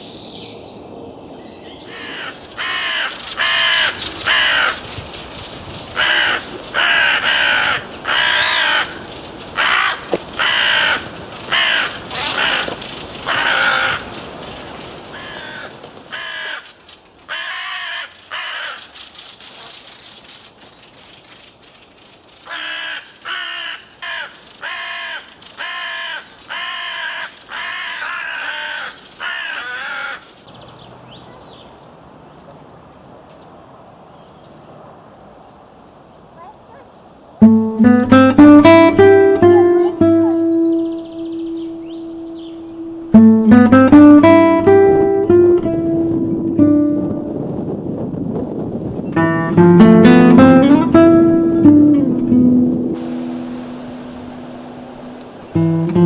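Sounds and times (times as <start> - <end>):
wind rumbling on microphone: 0.0 - 17.3, 37.0 - 56.0
crow cawing: 1.7 - 5.0, 5.9 - 14.3, 15.1 - 18.9, 22.4 - 30.4.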